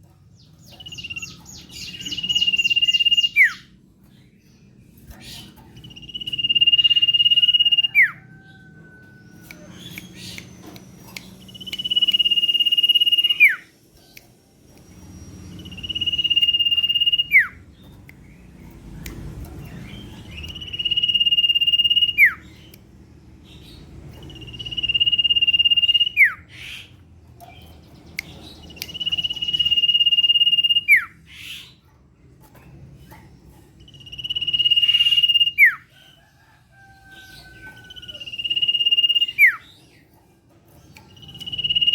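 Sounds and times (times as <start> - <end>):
bird whistling call: 9.6 - 13.7, 15.3 - 17.6, 20.4 - 22.4, 24.4 - 26.9, 28.8 - 31.6, 34.0 - 35.8, 37.8 - 39.6, 41.3 - 41.9.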